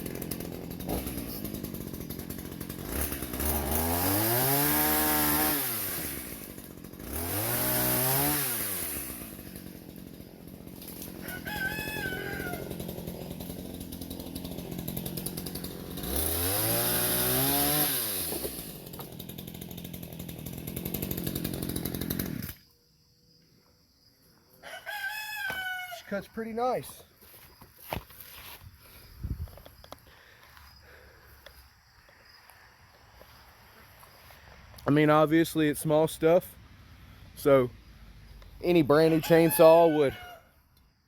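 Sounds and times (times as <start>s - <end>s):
chainsaw revving and cutting: 0.0s - 22.7s
rooster crowing: 11.1s - 12.9s, 24.6s - 26.1s, 39.0s - 40.7s.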